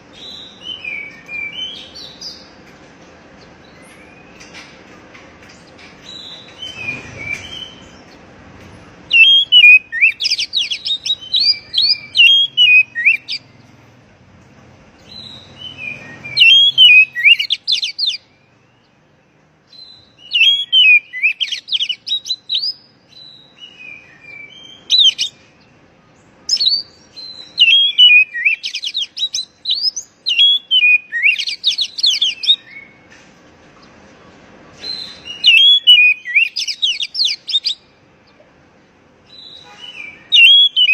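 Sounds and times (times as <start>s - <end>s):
bird singing varied whistles: 9.1s - 13.4s, 15.1s - 18.4s, 19.7s - 25.4s, 26.5s - 33.0s, 34.8s - 37.8s, 39.3s - 40.9s.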